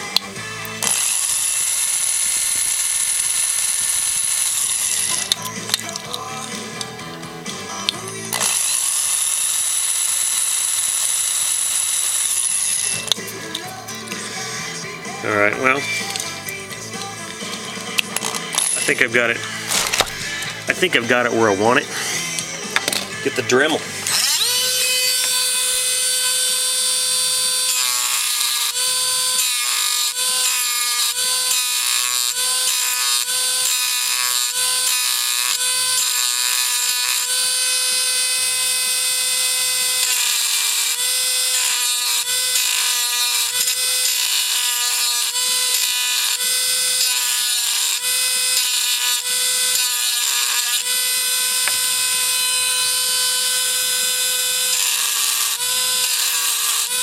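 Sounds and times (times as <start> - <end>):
rotary tool whining: 0.0 - 57.0
rough chatter of bit on metal: 0.7 - 9.5, 11.0 - 20.8.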